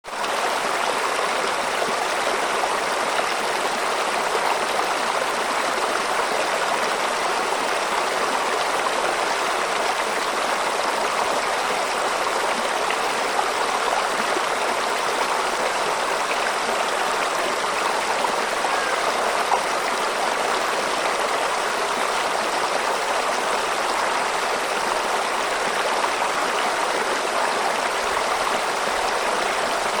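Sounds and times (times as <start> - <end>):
running water flowing: 0.1 - 30.0.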